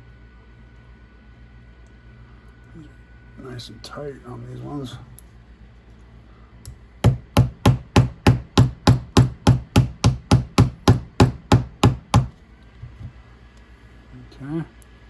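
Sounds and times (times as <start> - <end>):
small hammer tapping: 7.0 - 12.4.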